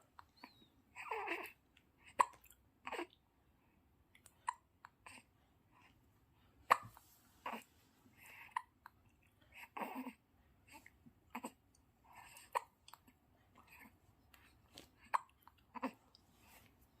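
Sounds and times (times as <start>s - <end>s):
baby hiccuping: 0.4s - 3.1s, 6.7s - 7.6s, 15.0s - 16.0s
baby throaty noises: 0.4s - 3.2s, 6.7s - 8.9s, 9.5s - 13.0s, 15.0s - 16.1s
baby breathing softly: 5.0s - 8.7s.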